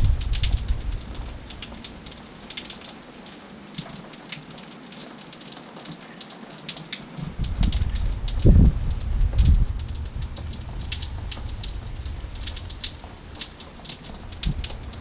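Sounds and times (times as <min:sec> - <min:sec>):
wind rumble on microphone: 0:00.0 - 0:01.8, 0:07.2 - 0:15.0
rain pattering: 0:00.0 - 0:15.0.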